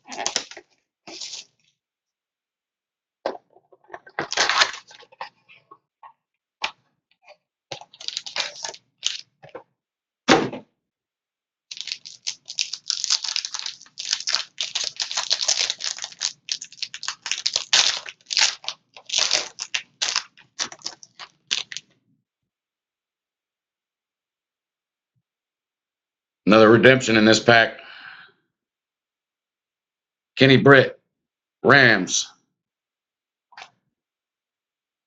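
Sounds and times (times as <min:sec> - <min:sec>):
plastic wrap crinkling and tearing: 0:00.0 - 0:01.5, 0:04.0 - 0:05.2, 0:07.7 - 0:09.3, 0:11.7 - 0:21.8
packaging clicks: 0:07.8 - 0:09.2, 0:11.7 - 0:21.8
sharp thump: 0:10.3 - 0:10.6.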